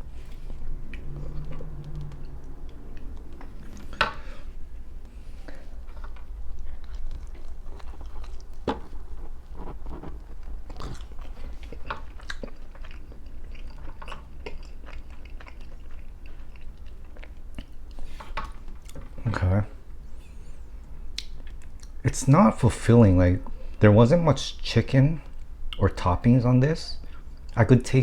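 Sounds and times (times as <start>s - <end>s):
person chewing pizza: 0.0s - 22.0s
low steady hum: 0.0s - 28.0s.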